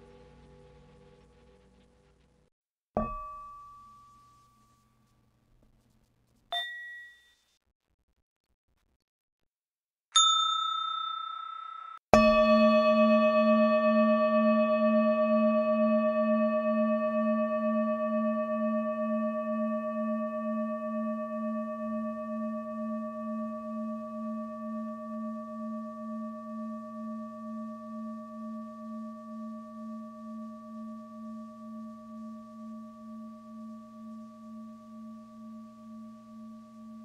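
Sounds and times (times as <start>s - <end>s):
struck bell ringing: 6.6s - 7.3s, 10.2s - 13.4s.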